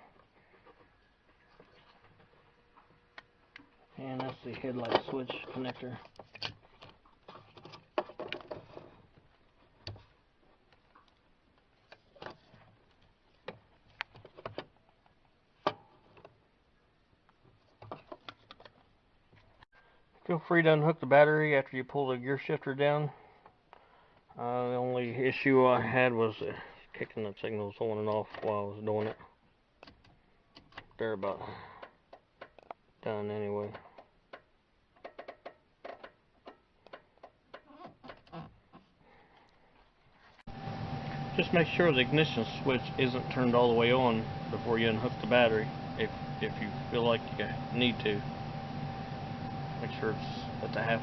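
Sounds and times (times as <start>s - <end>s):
plastic parts clicking and tapping: 3.2s - 10.1s, 17.4s - 19.5s, 31.8s - 32.8s, 33.6s - 38.4s
plastic parts clicking: 4.2s - 10.0s, 31.8s - 32.8s.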